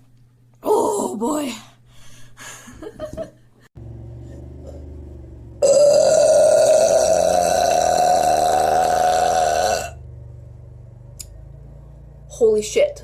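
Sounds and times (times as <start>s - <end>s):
woman burping: 5.6s - 10.0s.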